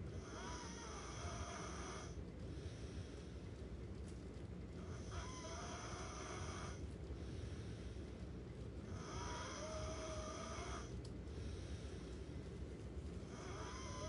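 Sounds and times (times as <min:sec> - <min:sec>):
snoring with faint whistle: 0:00.2 - 0:02.2, 0:04.9 - 0:06.8, 0:09.0 - 0:10.9, 0:13.3 - 0:14.0.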